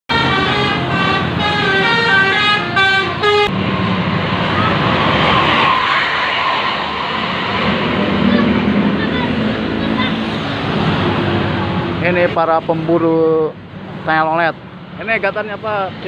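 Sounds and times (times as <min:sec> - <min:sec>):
bus horn playing a tune: 0:00.1 - 0:03.5
road noise rushing: 0:00.1 - 0:16.0.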